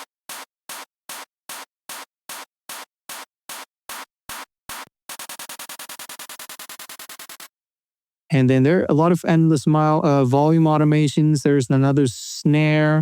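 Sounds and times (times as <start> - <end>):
electronic clap sample: 0.0 - 7.5.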